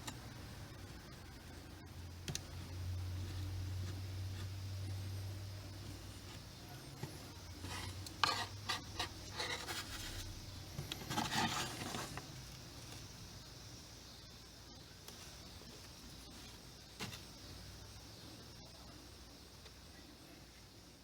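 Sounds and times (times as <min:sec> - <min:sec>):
epoxy scraping on plastic: 0:05.8 - 0:12.3.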